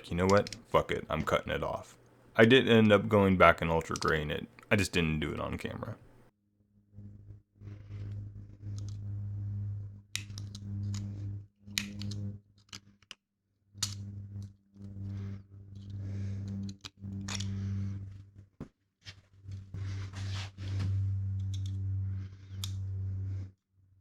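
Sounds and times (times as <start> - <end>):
low electric hum: 0.0 - 6.3, 7.0 - 12.4, 19.5 - 23.6.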